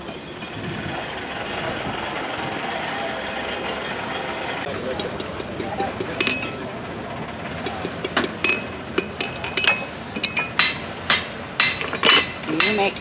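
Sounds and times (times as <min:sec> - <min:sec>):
hammer striking metal on anvil: 0:04.7 - 0:07.0, 0:07.7 - 0:13.0.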